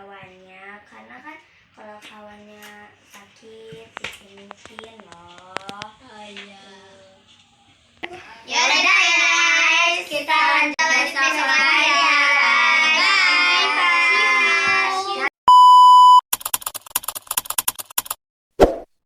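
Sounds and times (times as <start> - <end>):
high child-like singing voice: 1.8 - 7.2, 8.0 - 15.3
loud steady beep tone: 15.5 - 16.2
quick run of clicks: 16.3 - 18.2.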